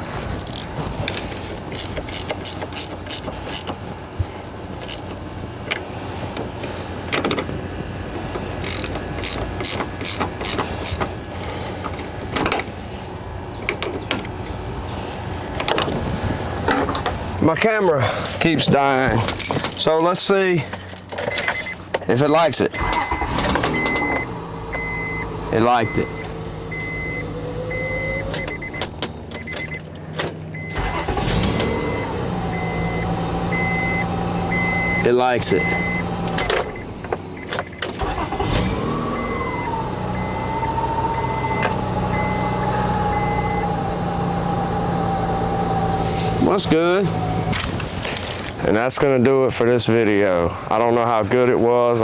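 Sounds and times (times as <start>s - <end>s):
car engine cranking and starting: 0.0s - 48.8s
ratchet wrench clicking: 0.4s - 3.7s, 8.6s - 11.7s.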